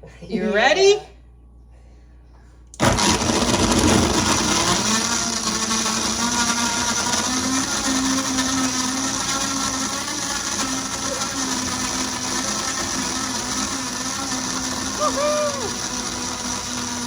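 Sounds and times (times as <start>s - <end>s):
blender crushing ice: 2.8s - 17.0s.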